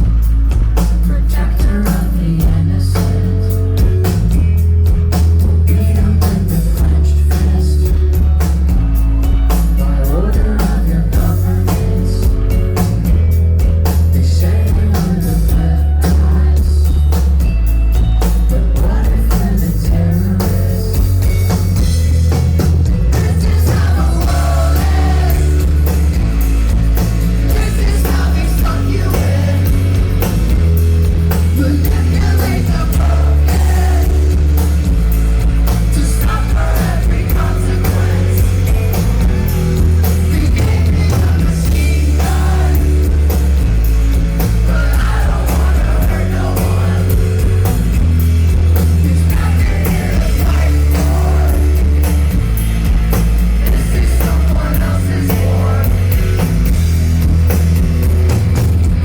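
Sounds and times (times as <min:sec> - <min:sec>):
rock band playing live: 0:00.0 - 0:59.0
person singing: 0:23.1 - 0:26.2, 0:27.4 - 0:30.5, 0:31.3 - 0:34.7, 0:35.7 - 0:39.3, 0:44.5 - 0:47.8, 0:48.8 - 0:52.2, 0:53.6 - 0:56.5.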